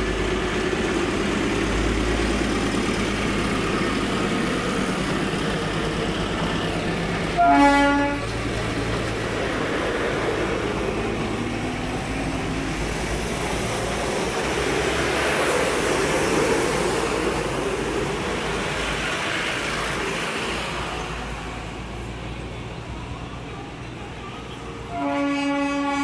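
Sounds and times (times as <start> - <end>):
train running: 0.0 - 26.0.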